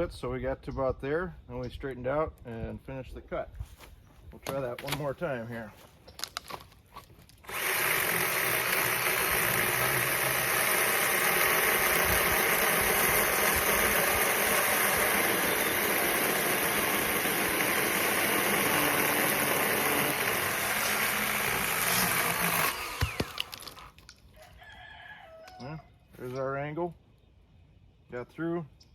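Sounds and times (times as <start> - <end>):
chainsaw cutting through log: 7.4 - 24.0.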